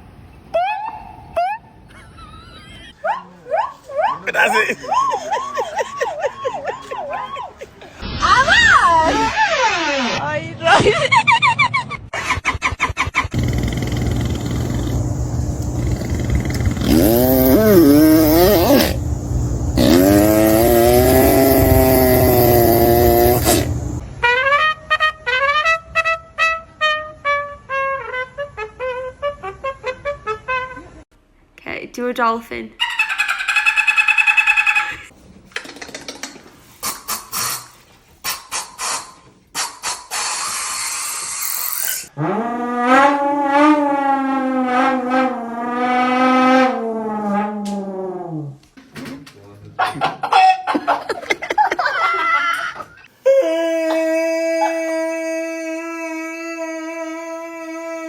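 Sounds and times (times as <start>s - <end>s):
man imitating dolphin sounds: 13.4s - 19.1s, 19.8s - 24.0s, 53.2s - 58.0s
low rumbling vocal growl: 13.4s - 24.0s
vocal clicks: 13.4s - 24.0s
wavering vocal whine: 13.4s - 24.0s.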